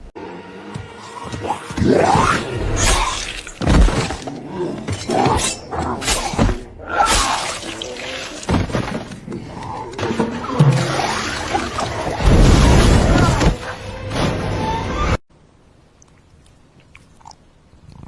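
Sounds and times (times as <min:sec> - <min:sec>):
crashes and shattering: 0:12.1 - 0:13.6.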